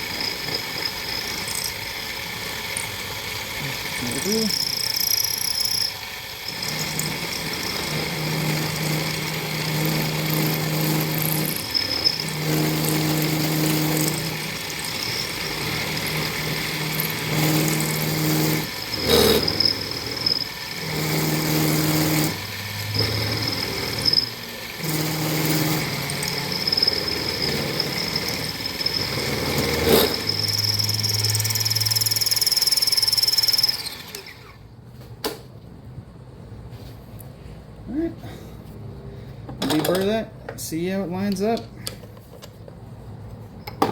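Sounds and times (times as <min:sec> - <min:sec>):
machine tool cutting steel: 0:00.0 - 0:34.5.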